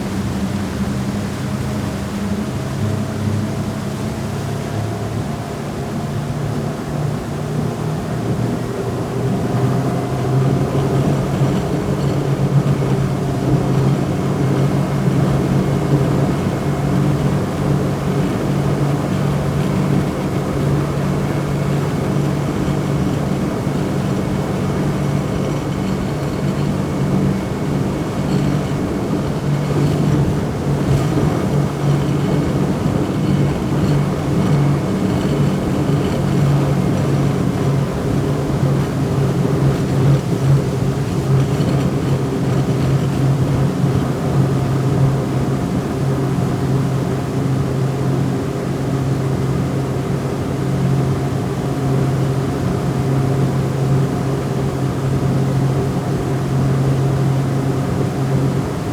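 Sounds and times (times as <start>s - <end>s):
speedboat engine droning: 0.0s - 58.9s.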